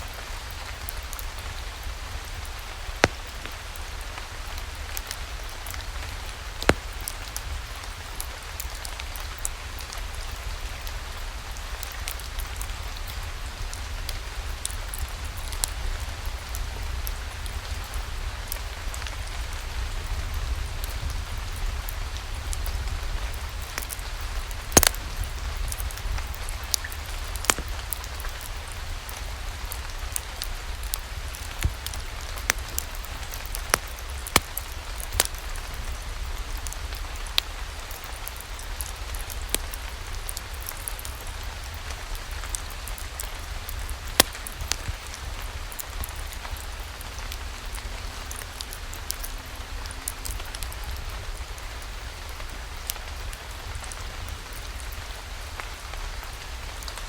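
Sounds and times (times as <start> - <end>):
steady rain: 0.0 - 57.0
sharp pops and clicks: 3.0 - 3.6, 24.7 - 26.0, 26.7 - 28.4, 31.4 - 35.4, 44.1 - 45.0.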